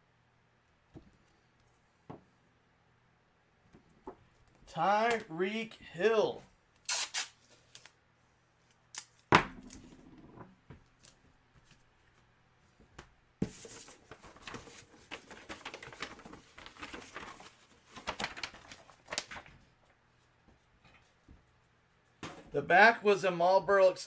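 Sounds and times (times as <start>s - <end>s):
packaging crinkling and rustling: 13.5s - 19.7s.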